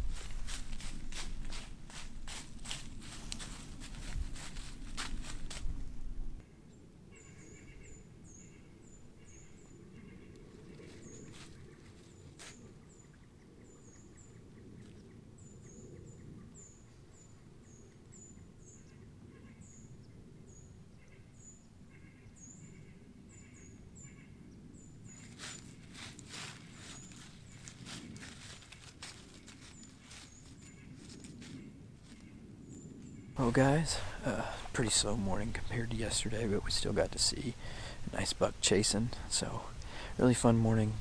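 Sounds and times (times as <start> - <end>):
fainter lower bird calls: 6.5 - 33.4.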